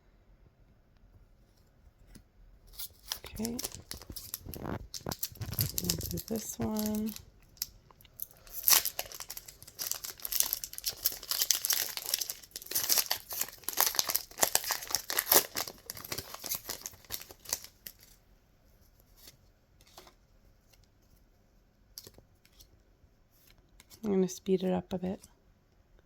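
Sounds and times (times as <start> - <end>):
foil wrapper tearing and crinkling: 2.7 - 18.2.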